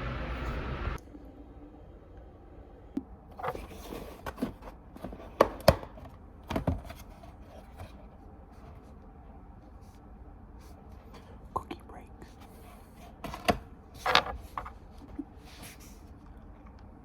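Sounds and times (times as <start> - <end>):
objects knocking and clunking: 3.3 - 8.0.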